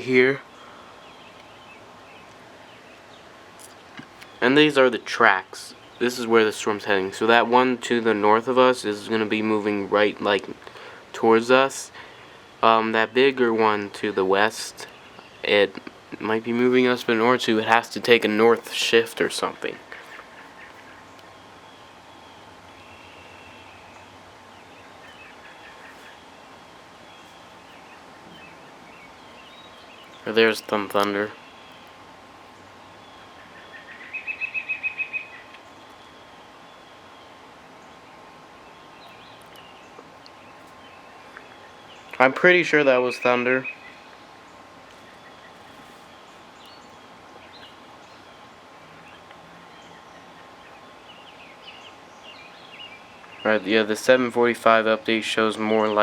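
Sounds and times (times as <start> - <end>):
background hiss: 0.0 - 56.0
faint bird chirps: 14.6 - 42.5, 43.1 - 56.0.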